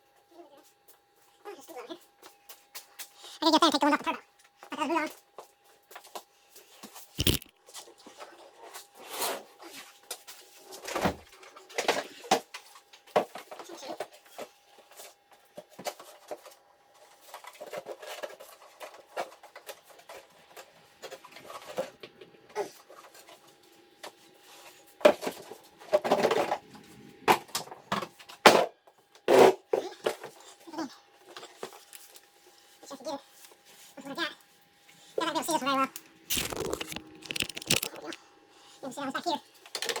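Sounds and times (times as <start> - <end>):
tools and parts clattering: 7.2 - 7.5, 36.3 - 38.2.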